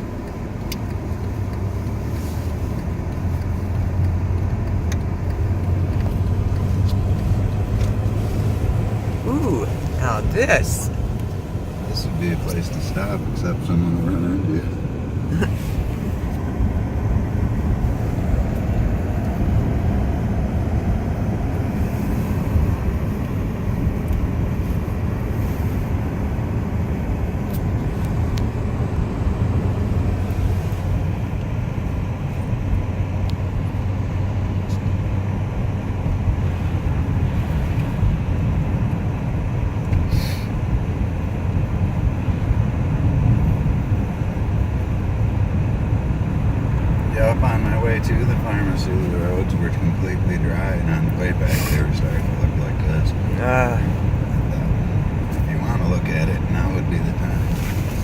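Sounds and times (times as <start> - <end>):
car interior road rumble: 0.0 - 58.0.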